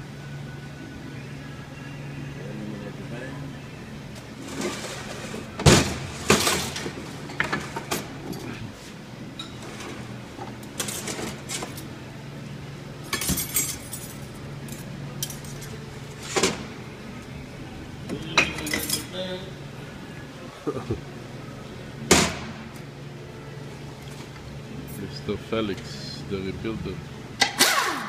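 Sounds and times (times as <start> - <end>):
metal parts clinking and clattering: 13.1 - 15.8, 18.5 - 19.1.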